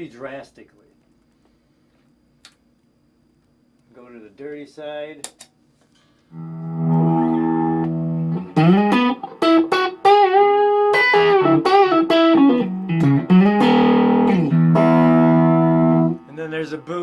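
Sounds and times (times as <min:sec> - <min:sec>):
distorted electric guitar lead: 0:06.4 - 0:17.0.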